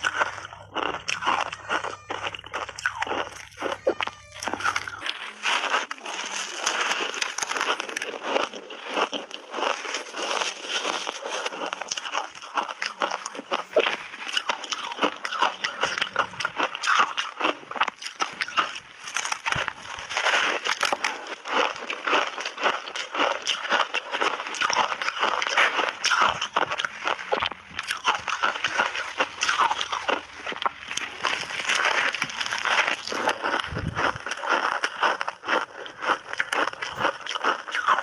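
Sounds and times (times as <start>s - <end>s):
chewing ice crunching: 0.0s - 38.0s.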